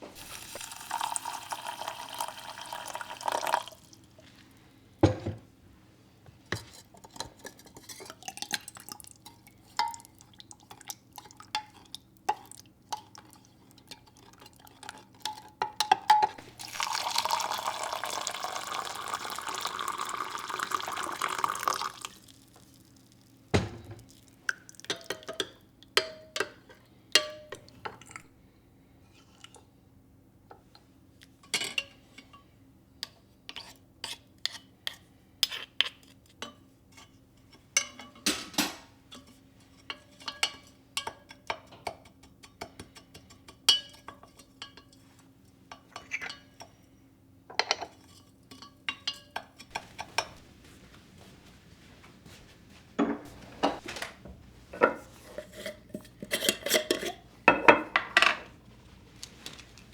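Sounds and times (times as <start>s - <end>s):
tap water running: 0.0s - 4.0s, 16.4s - 24.8s, 49.7s - 50.7s, 53.0s - 55.0s
dishes and glassware clinking: 5.0s - 5.4s, 23.6s - 24.2s, 37.8s - 41.9s, 45.7s - 46.8s, 47.5s - 50.7s, 53.0s - 54.1s, 54.7s - 58.6s.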